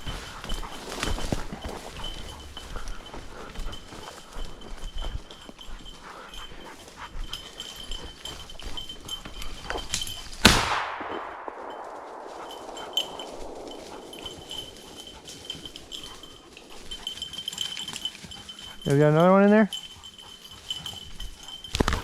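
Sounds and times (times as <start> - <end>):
brush rustling: 0.0 - 22.0
faint bell tinkle: 0.0 - 22.0
shotgun shot: 10.4 - 13.8.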